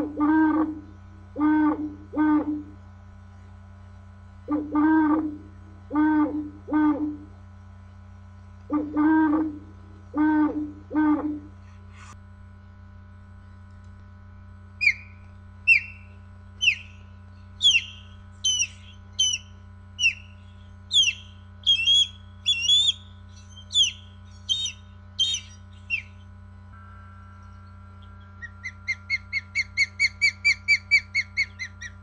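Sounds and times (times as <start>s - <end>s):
steady electronic hum: 0.0s - 32.0s
bird-call ringtone chirps: 14.8s - 17.0s, 17.6s - 26.2s, 26.8s - 31.9s.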